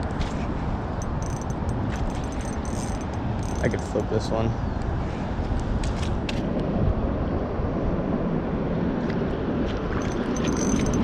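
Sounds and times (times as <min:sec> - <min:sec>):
low rumbling background noise: 0:00.0 - 0:11.0.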